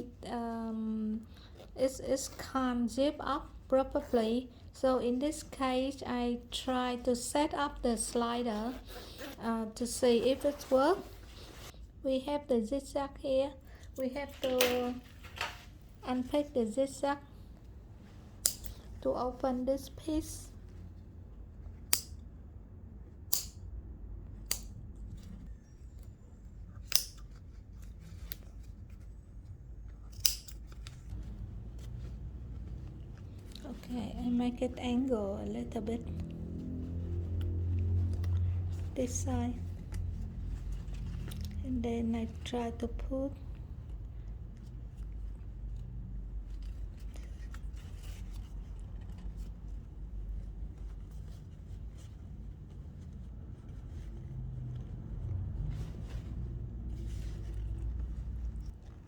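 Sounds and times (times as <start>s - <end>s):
metal zipper clicking and scraping: 8.6s - 9.4s, 26.7s - 27.4s, 30.0s - 31.1s
scissors snipping thread: 18.4s - 18.9s, 21.8s - 22.3s, 23.2s - 23.8s, 24.4s - 24.9s, 26.7s - 27.4s, 29.9s - 31.1s.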